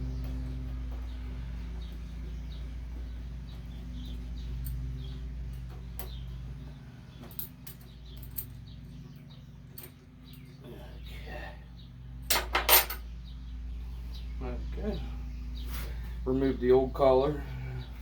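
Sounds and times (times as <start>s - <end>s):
low hum: 0.0s - 18.0s
faint squeaking chirps: 13.0s - 18.0s.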